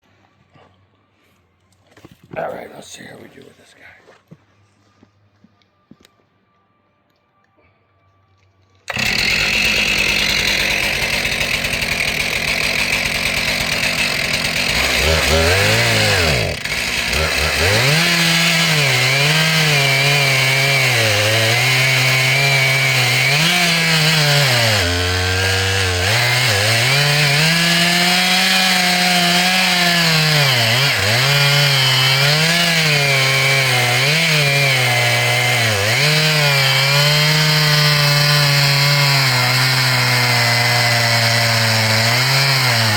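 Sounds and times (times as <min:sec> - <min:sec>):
chainsaw cutting wood: 0:08.9 - 0:42.9
chainsaw revving: 0:08.9 - 0:42.9.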